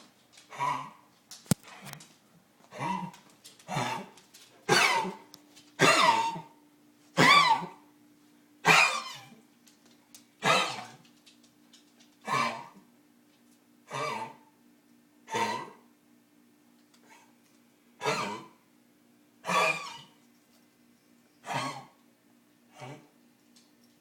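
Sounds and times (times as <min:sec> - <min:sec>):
faint steady hum: 0:00.0 - 0:24.0
animal coughing: 0:04.7 - 0:06.6, 0:07.2 - 0:07.8, 0:10.4 - 0:10.8, 0:15.3 - 0:15.8, 0:18.0 - 0:18.6, 0:21.4 - 0:22.0.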